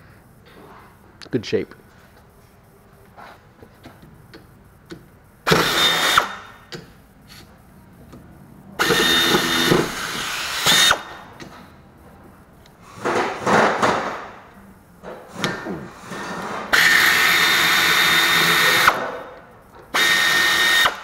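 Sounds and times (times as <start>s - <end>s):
small power tool running: 5.4s - 6.5s, 8.8s - 11.1s, 16.7s - 19.0s, 19.9s - 21.0s.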